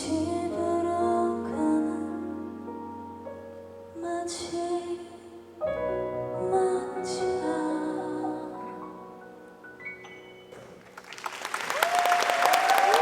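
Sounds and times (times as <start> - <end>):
woman singing: 0.0 - 2.6, 4.0 - 5.6, 6.3 - 8.9.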